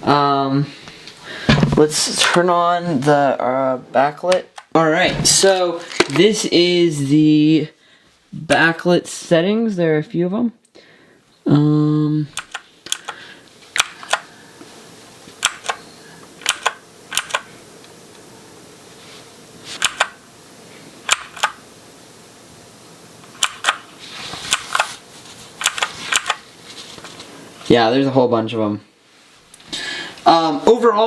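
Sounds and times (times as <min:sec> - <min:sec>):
keyboard key clicks: 0:12.4 - 0:13.2, 0:16.4 - 0:17.4, 0:19.8 - 0:20.1, 0:23.4 - 0:23.8.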